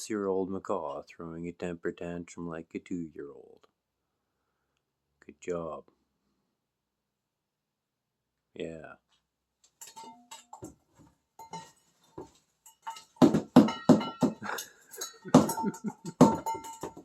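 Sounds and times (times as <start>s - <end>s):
bird bashing metal food bowl: 9.8s - 10.8s, 11.4s - 17.0s.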